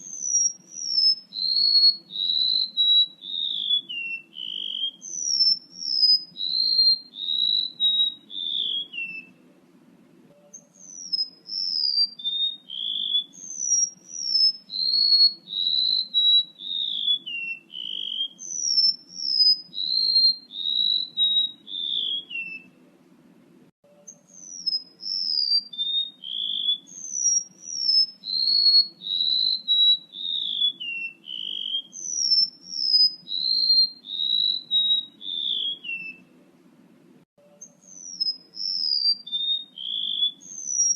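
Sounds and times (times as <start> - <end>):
bird whistling high notes: 0.0 - 9.3, 10.4 - 22.7, 24.1 - 36.3, 37.6 - 40.9
faint low hum: 3.1 - 12.2, 18.3 - 25.3.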